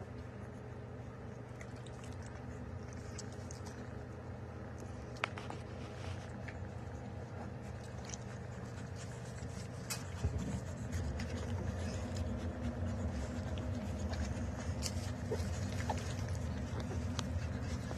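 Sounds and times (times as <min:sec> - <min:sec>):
steady low hum: 0:00.0 - 0:17.9
puppies squeaking and grunting: 0:06.9 - 0:17.9.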